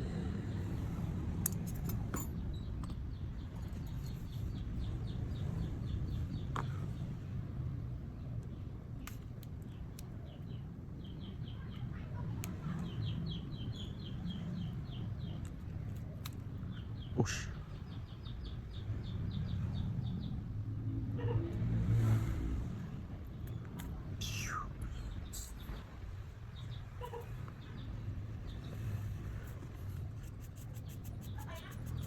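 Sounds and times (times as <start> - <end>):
sharp clicks: 9.0 - 10.2.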